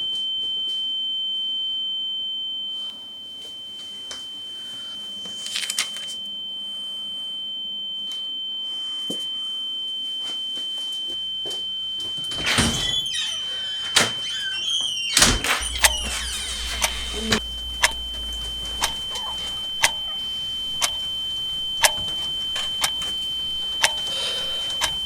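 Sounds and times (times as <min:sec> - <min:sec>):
high-pitched ringing tone: 0:00.0 - 0:25.0
small clicks and rustles: 0:05.4 - 0:06.2.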